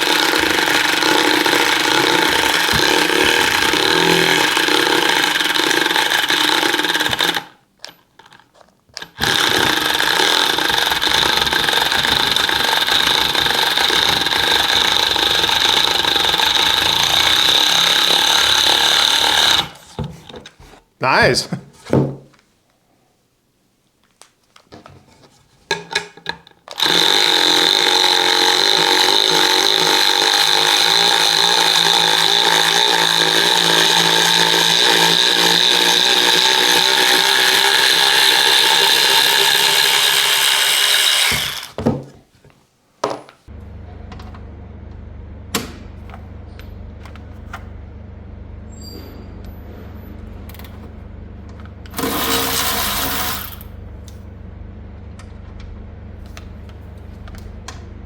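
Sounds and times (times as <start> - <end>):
cordless ratchet motor whining: 0.0 - 8.0, 9.0 - 20.4, 26.7 - 41.8, 51.9 - 53.7
low hum: 43.6 - 52.0, 53.6 - 58.0.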